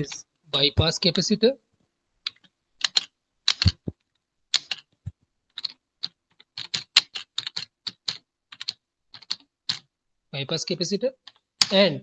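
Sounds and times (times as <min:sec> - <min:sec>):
keyboard key clicks: 0:02.2 - 0:09.9.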